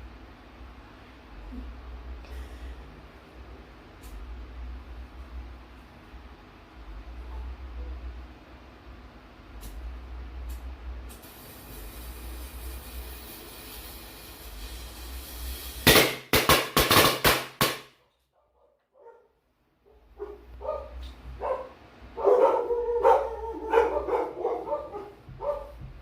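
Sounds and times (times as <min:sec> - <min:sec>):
firecrackers banging: 0:11.2 - 0:17.9
dog barking: 0:18.4 - 0:25.8.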